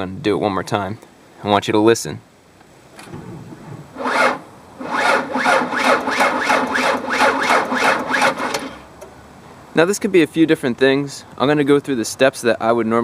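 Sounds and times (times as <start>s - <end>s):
car starter cranking engine: 2.9s - 9.1s.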